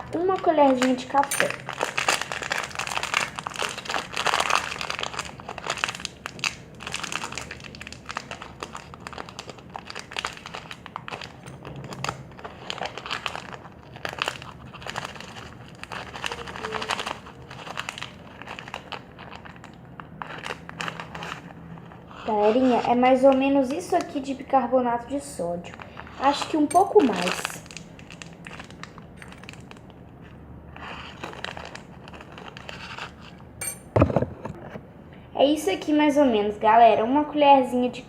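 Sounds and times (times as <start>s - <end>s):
packaging crinkling: 0.0s - 22.6s, 25.6s - 33.4s.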